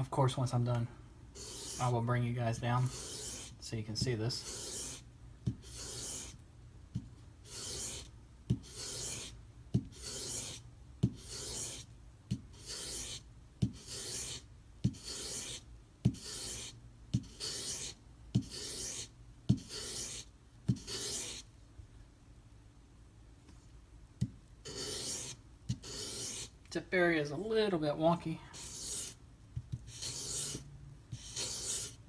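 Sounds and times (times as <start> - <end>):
knife blade scraping on sandpaper: 1.4 - 2.0, 2.8 - 3.6, 4.3 - 5.0, 7.5 - 8.1, 8.7 - 9.3, 10.0 - 10.6, 11.3 - 11.8, 17.4 - 21.4, 24.7 - 26.5, 28.6 - 29.2, 29.9 - 30.6, 31.2 - 32.0.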